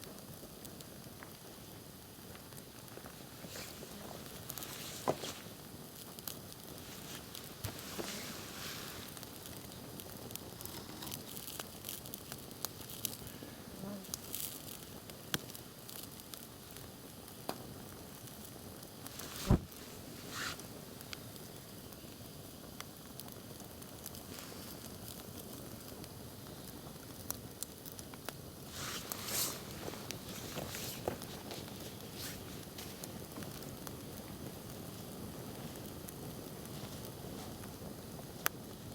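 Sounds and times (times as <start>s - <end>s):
campfire crackling: 0.0s - 38.9s
loud fire pop: 19.2s - 20.0s.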